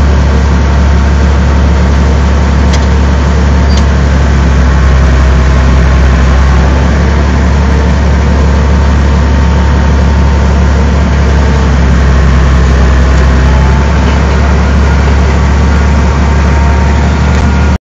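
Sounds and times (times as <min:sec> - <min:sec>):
tractor engine low hum: 0:00.0 - 0:17.8.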